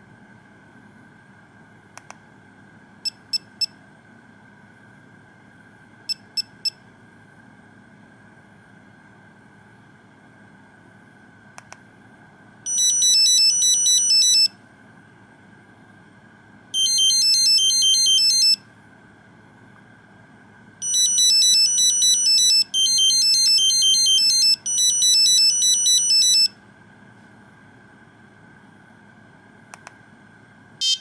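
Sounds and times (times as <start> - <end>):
monophonic phone ringtone: 16.8 - 18.6, 20.8 - 26.5
brief clicks: 29.7 - 30.0.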